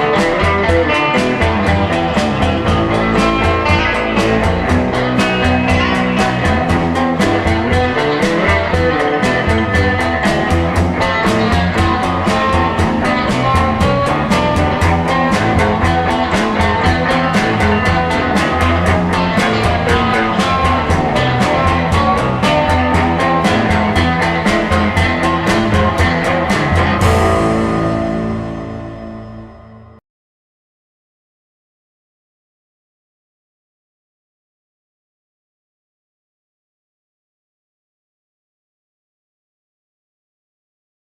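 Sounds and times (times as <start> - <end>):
steady drum beat: 0.0 - 29.1
garage rock guitar: 0.0 - 30.0.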